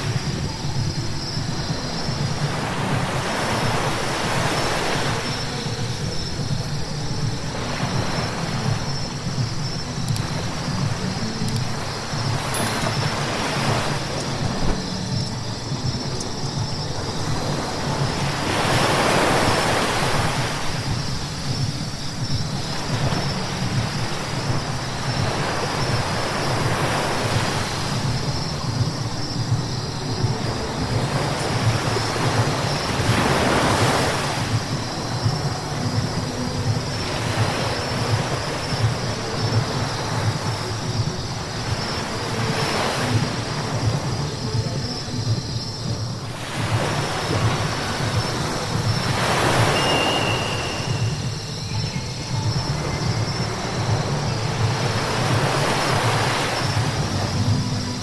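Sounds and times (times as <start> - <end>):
tyres hissing on wet road: 46.3 - 51.7.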